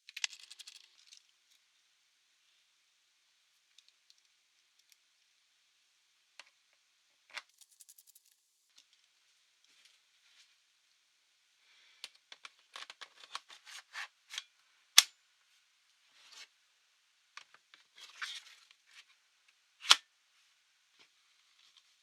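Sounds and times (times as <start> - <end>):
clicks and rattles of laptop parts: 12.1 - 13.8.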